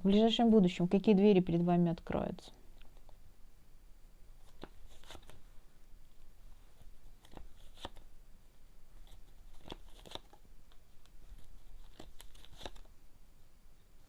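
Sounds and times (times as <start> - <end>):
cards shuffled and snapping: 4.4 - 5.5, 6.9 - 8.1, 9.0 - 12.9.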